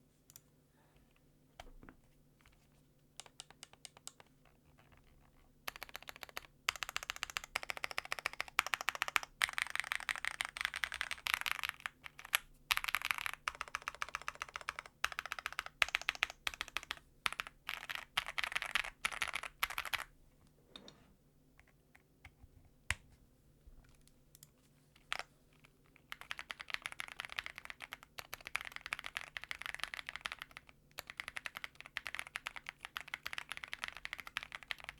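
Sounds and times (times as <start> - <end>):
typing on mechanical keyboard: 3.2 - 20.1, 24.4 - 34.9.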